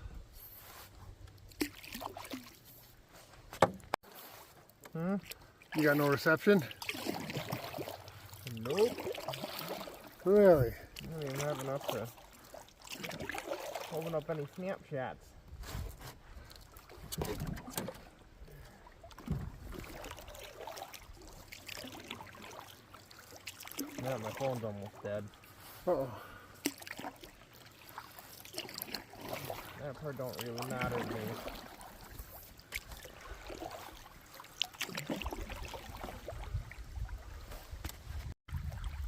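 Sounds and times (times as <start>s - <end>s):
paddle strokes in water: 0.3s - 14.8s, 15.5s - 39.0s
dull thump: 3.5s - 4.0s, 19.2s - 19.6s.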